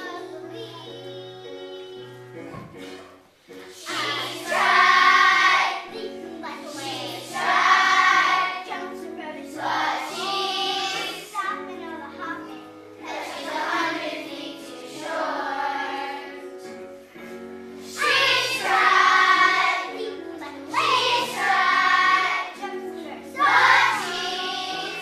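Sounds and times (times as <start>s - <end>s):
instrumental accompaniment: 0.0s - 25.0s
children's choir singing: 3.6s - 11.5s, 13.0s - 16.9s, 17.8s - 25.0s.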